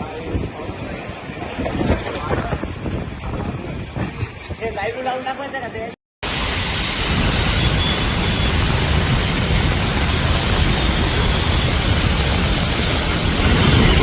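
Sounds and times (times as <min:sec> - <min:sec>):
heavy rain pouring: 0:06.2 - 0:14.0
deep rumble: 0:08.5 - 0:14.0.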